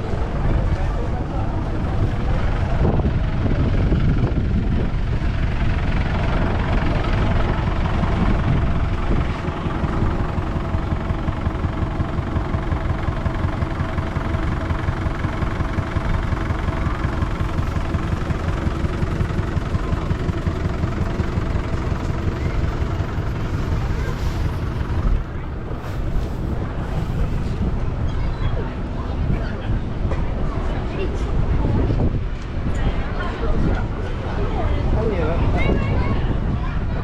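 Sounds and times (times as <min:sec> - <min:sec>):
vehicle engine rumbling: 0:00.0 - 0:37.0.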